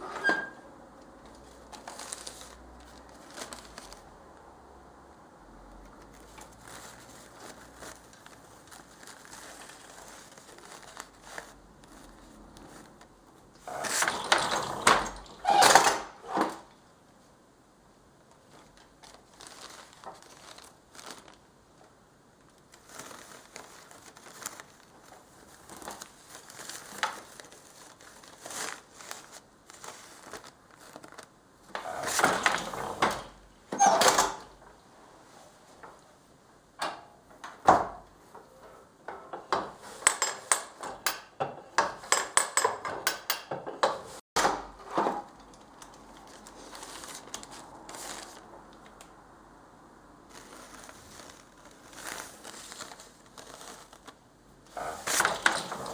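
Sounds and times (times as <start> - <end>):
paper crinkling and rustling: 1.2 - 4.2, 5.8 - 14.5, 18.2 - 33.5, 44.1 - 49.1, 50.2 - 55.9
loom clicks and knocks: 13.6 - 16.6, 31.7 - 34.8, 36.8 - 46.2, 54.7 - 55.9.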